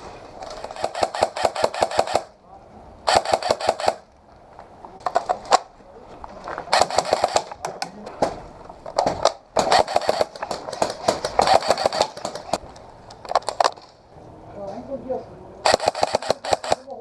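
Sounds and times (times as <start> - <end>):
airsoft guns firing: 0.5 - 2.3, 3.1 - 4.1, 6.7 - 7.8, 9.0 - 12.6, 15.7 - 17.0.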